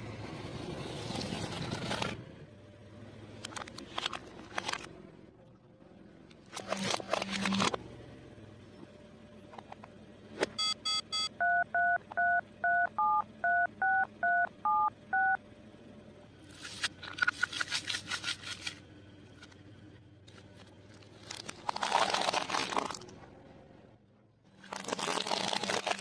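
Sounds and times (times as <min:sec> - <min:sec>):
short high beeps: 0:10.6 - 0:15.4
telephone keypad tones: 0:10.6 - 0:15.4.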